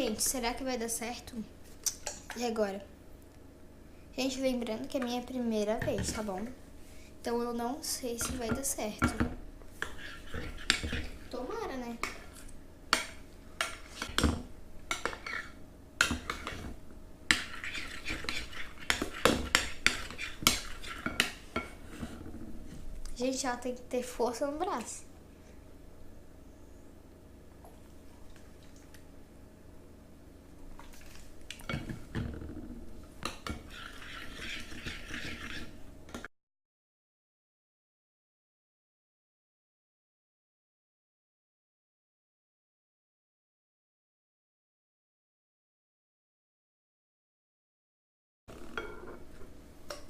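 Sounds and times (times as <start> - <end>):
utensil scraping and clinking bowl: 8.2 - 11.4, 12.0 - 22.2, 33.2 - 35.8, 48.6 - 49.5
utensil stirring thick slime: 9.7 - 12.5, 14.9 - 22.4, 33.4 - 35.8.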